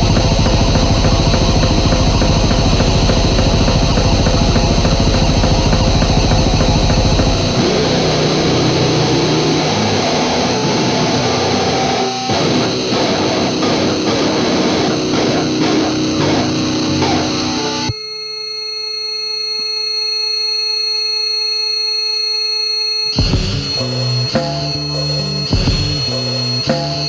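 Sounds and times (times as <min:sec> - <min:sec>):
distorted guitar riffing: 0:00.0 - 0:17.9, 0:23.2 - 0:27.0
fast even drumming: 0:00.0 - 0:17.9
loud distorted rock song: 0:00.0 - 0:17.9, 0:23.2 - 0:27.0.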